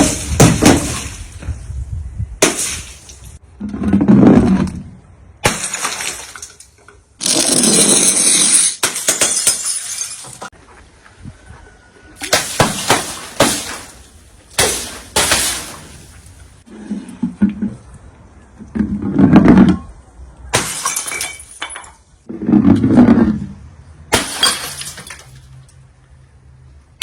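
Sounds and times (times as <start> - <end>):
glass shattering: 0.0 - 1.4, 2.4 - 3.4, 5.4 - 10.5, 12.2 - 16.3, 20.5 - 22.0, 24.1 - 25.5
crackling glass fragments: 5.5 - 10.5.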